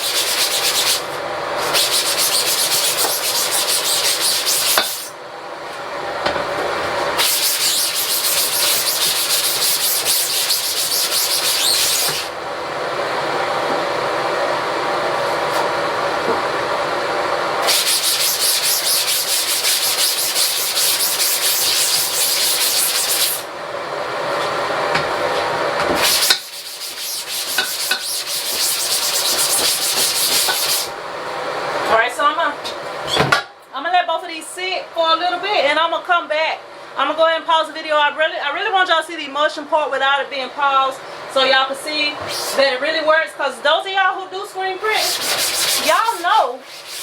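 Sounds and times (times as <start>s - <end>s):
brush scrubbing a screen: 0.0s - 5.1s, 7.2s - 12.3s, 17.6s - 23.5s, 26.0s - 30.9s, 44.8s - 47.0s.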